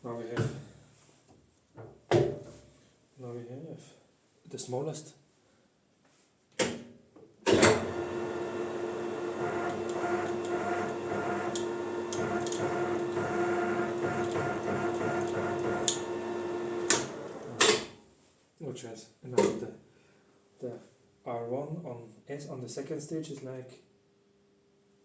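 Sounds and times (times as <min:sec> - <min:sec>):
metal lathe motor humming: 0:07.6 - 0:17.8.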